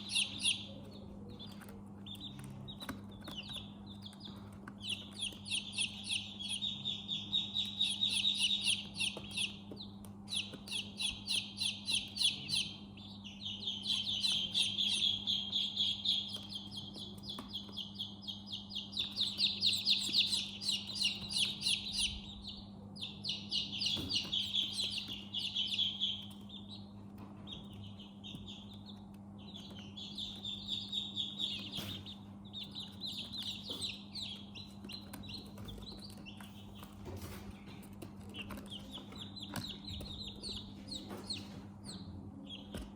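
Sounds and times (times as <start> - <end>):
baby chicks peeping: 0.0 - 42.9.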